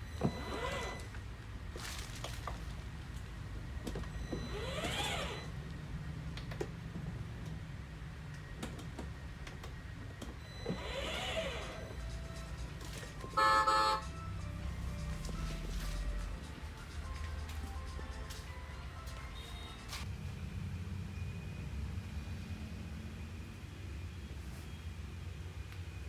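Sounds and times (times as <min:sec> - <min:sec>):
electric motors whining: 0:00.0 - 0:01.2, 0:03.8 - 0:06.0, 0:09.6 - 0:16.6
buzzy electronic horn: 0:13.2 - 0:16.3.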